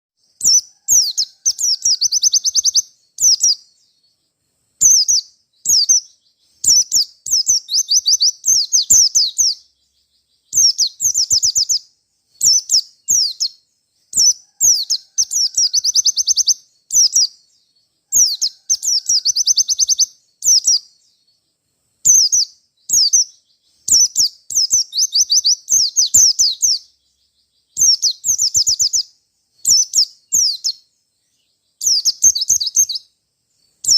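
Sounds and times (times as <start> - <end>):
bird chirping and trilling: 0.2 - 21.4, 22.0 - 33.9.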